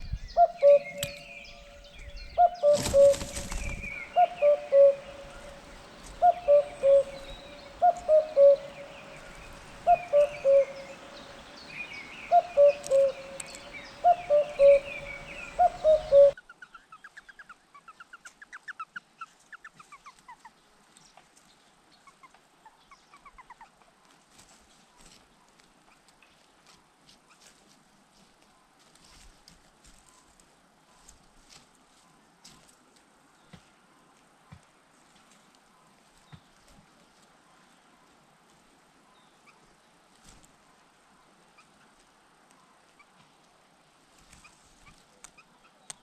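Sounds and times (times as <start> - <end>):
high bird chirping: 0.0 - 16.4
bird's two-note calls: 0.4 - 3.3, 3.9 - 16.4.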